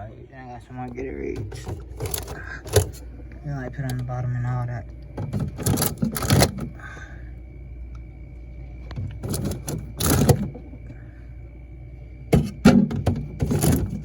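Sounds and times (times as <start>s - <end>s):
faint steady hum: 0.0s - 14.0s
bottles and cans clunking: 1.3s - 3.1s, 5.2s - 6.7s, 9.0s - 10.7s, 12.3s - 14.0s.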